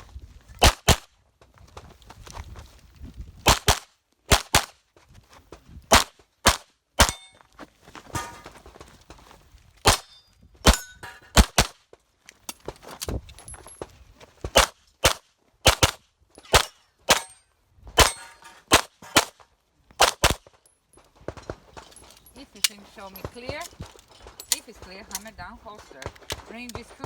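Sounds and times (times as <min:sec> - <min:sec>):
pistol shots: 0:03.4 - 0:04.7, 0:05.9 - 0:07.3, 0:09.8 - 0:11.8, 0:14.5 - 0:17.4, 0:18.0 - 0:19.4, 0:20.0 - 0:20.5.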